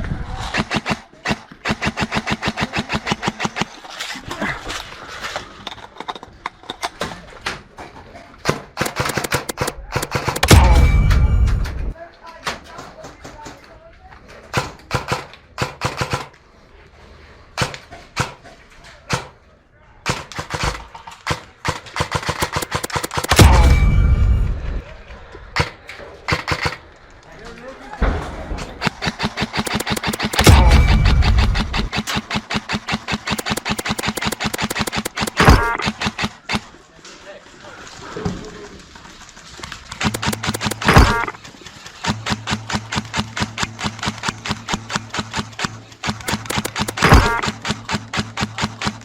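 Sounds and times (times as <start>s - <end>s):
airsoft gun firing bursts: 0.4s - 3.9s, 8.4s - 11.0s, 14.6s - 16.3s, 20.1s - 23.8s, 25.6s - 26.8s, 28.8s - 36.7s, 40.0s - 49.0s
loud low thump and rumble: 10.4s - 11.9s, 23.4s - 24.9s, 30.4s - 31.9s.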